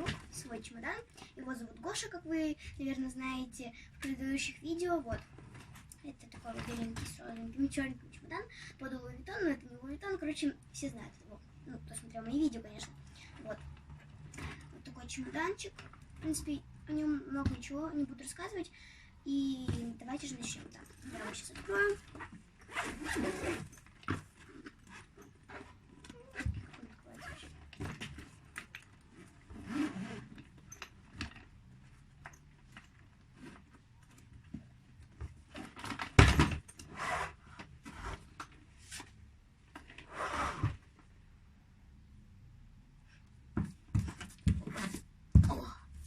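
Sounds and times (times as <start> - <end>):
suitcase scrapes clicks and knocks: 20.6 - 31.5, 32.7 - 34.6, 43.6 - 45.0
suitcase zipper pulled open: 22.1 - 27.7, 29.1 - 30.6, 36.9 - 38.2, 40.0 - 40.8.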